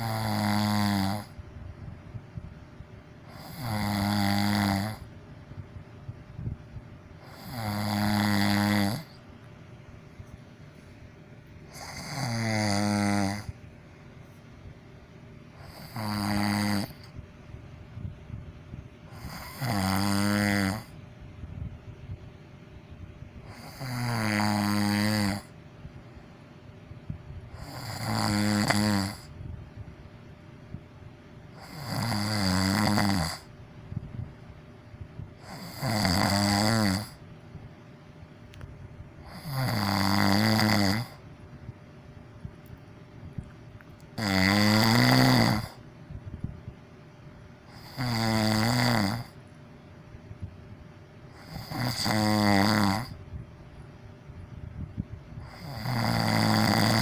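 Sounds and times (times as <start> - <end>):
person snoring: 0.0 - 1.4, 3.3 - 5.1, 7.2 - 9.2, 11.7 - 13.6, 15.6 - 17.2, 19.1 - 21.0, 23.5 - 25.6, 27.5 - 29.3, 31.5 - 33.5, 35.4 - 37.2, 39.2 - 41.2, 44.2 - 45.8, 47.7 - 49.4, 51.3 - 53.2, 55.4 - 57.0.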